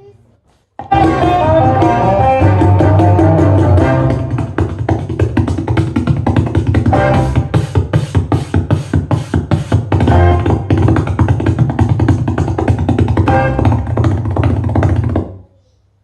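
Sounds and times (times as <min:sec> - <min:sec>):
music with heavy bass and drums: 0:00.8 - 0:04.8, 0:06.4 - 0:11.0.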